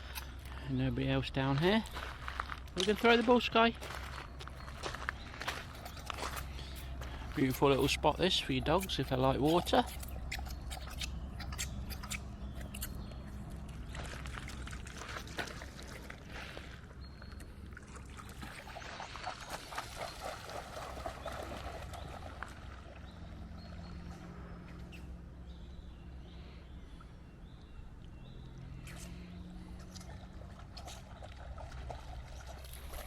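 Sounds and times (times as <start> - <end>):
river water trickling and splashing: 12.9 - 24.4, 26.4 - 33.0.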